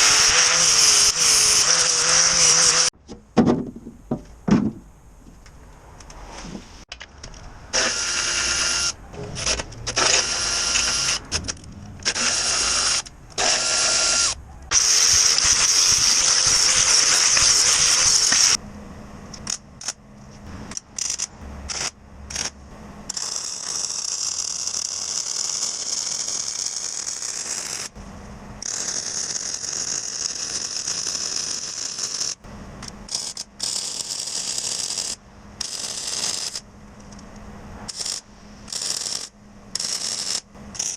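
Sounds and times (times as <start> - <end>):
power tool on metal: 0.0 - 2.9, 7.7 - 18.6, 23.1 - 28.0, 28.6 - 32.4, 33.1 - 36.6, 37.9 - 40.9.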